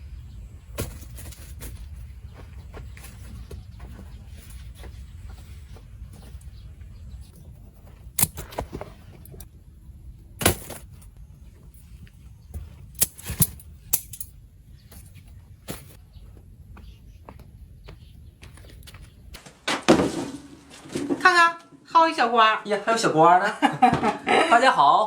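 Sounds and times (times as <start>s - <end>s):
low steady rumble: 0.0s - 18.4s.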